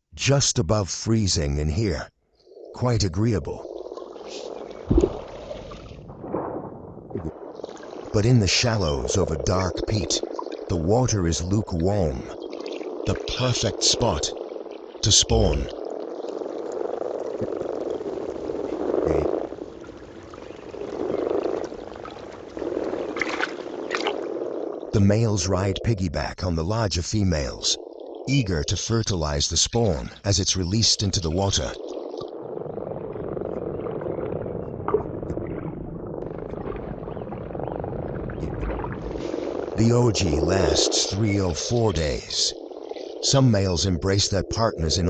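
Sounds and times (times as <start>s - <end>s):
frogs croaking: 1.5s - 45.0s
low knock: 4.9s - 5.3s.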